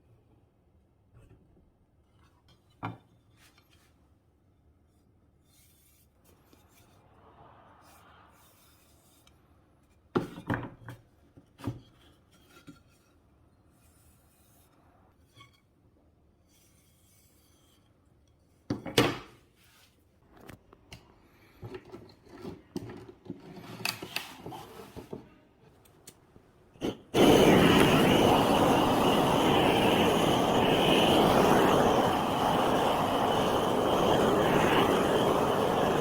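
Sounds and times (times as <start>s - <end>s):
loud steady rushing noise: 27.2s - 36.0s.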